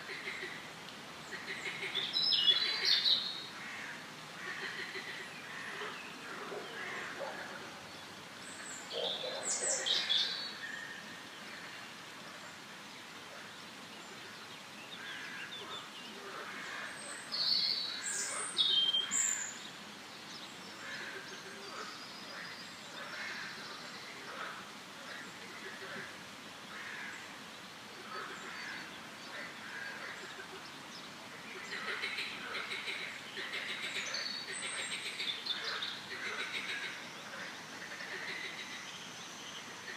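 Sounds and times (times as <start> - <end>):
soft background hiss: 0.0 - 39.9.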